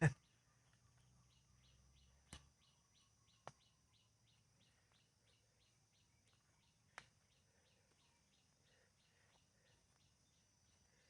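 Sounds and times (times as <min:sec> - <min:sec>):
faint high chirping: 0:00.0 - 0:11.0.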